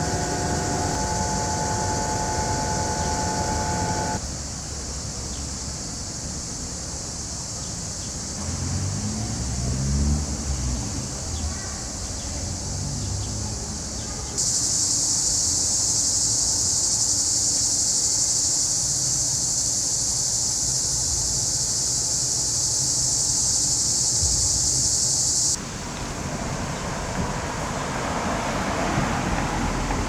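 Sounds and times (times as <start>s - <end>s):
cicadas buzzing: 0.0s - 4.2s, 14.4s - 30.0s
low traffic hum: 0.0s - 4.2s, 25.4s - 30.0s.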